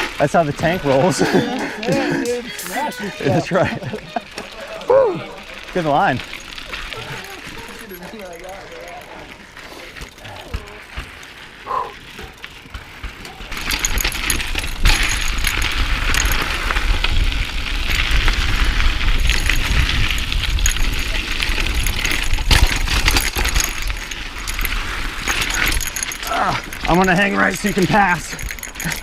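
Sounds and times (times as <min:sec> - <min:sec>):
bike rattling and clattering: 0:00.0 - 0:29.0
tyres crunching over stones: 0:00.0 - 0:29.0.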